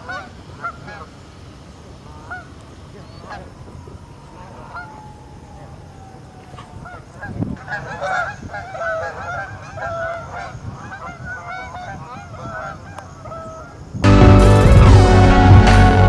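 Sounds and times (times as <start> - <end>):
geese honking: 0.0 - 1.2, 2.0 - 5.7, 6.4 - 16.0
loud electronic music: 14.0 - 16.0.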